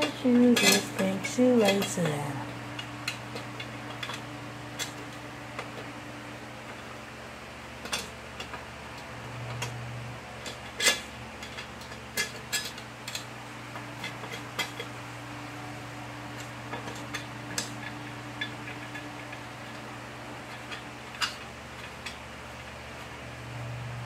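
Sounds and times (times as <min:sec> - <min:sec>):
metal tools clinking: 0:00.0 - 0:02.4
steady low hum: 0:00.0 - 0:24.0.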